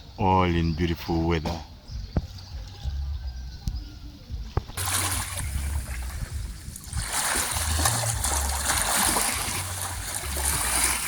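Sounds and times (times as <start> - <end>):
low uneven rumble: 2.0 - 11.0
water lapping at shore: 4.7 - 11.0.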